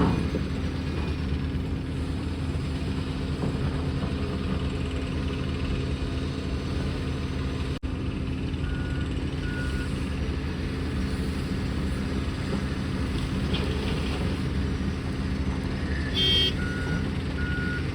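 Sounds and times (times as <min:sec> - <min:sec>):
heavy diesel engine running: 0:00.0 - 0:17.9
truck reversing alarm beeping: 0:08.6 - 0:10.3, 0:15.8 - 0:17.9.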